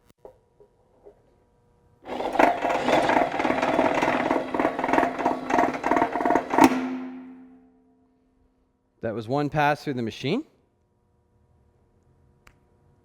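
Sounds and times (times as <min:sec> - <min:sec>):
wire stripping machine motor hum: 0:02.0 - 0:07.9
rapid clicking: 0:02.1 - 0:07.3.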